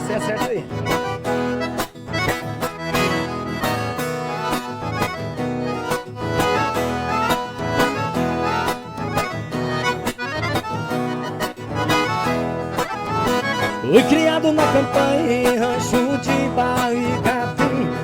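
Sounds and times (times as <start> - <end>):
accordion playing: 0.0 - 18.0.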